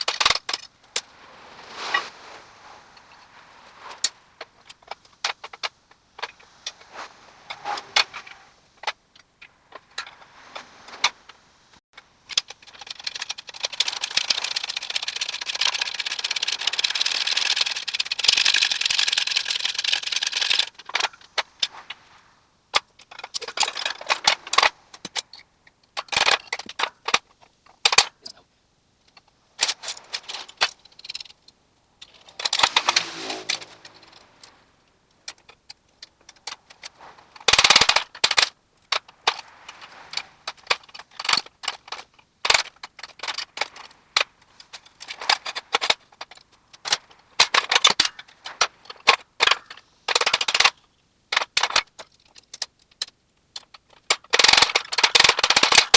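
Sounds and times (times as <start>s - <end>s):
harsh rushing noise: 0.0s - 8.8s, 29.6s - 35.2s.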